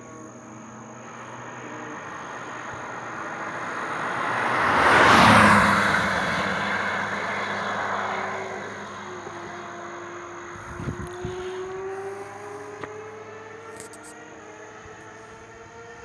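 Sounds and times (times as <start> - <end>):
motorcycle engine roaring past: 1.0 - 16.0.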